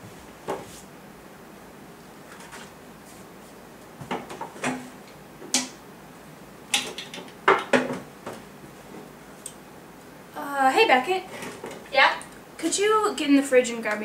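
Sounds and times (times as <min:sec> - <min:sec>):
dishes and cupboards knocking: 0:06.8 - 0:08.4.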